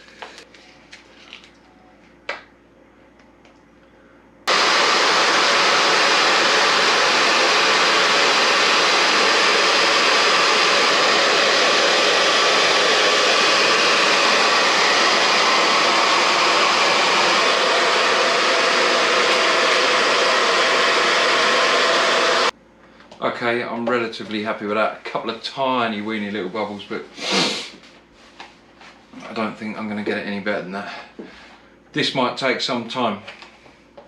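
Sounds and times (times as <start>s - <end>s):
heat gun fan blowing: 4.0s - 22.6s.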